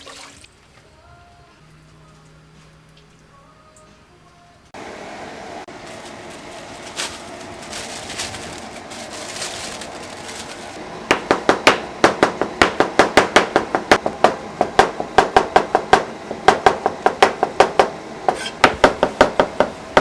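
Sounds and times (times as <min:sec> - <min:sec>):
steady kitchen hiss: 0:04.7 - 0:20.0
rapid chopping knocks: 0:11.1 - 0:18.0.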